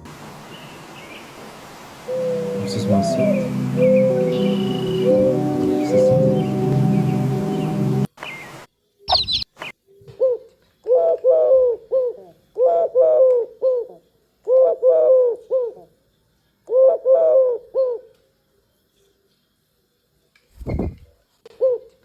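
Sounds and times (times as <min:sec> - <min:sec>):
dove cooing: 0:02.0 - 0:08.0, 0:10.2 - 0:15.9, 0:16.7 - 0:18.0.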